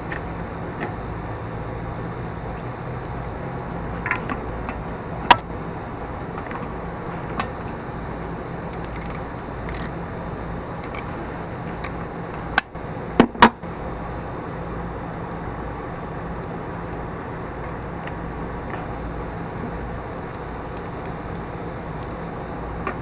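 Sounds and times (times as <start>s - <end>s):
low background hum: 0.0s - 23.0s
metallic clicks of hand tools: 8.7s - 10.0s, 10.8s - 11.2s.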